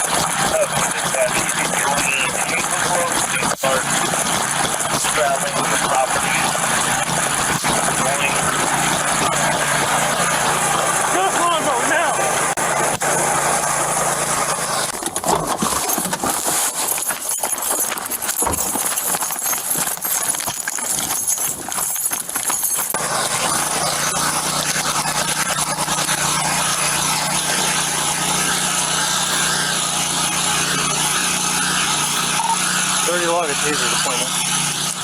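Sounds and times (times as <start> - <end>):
steady hum: 0.5 - 15.0, 21.1 - 35.0
running footsteps: 12.2 - 35.0
body camera rattling: 14.9 - 33.0.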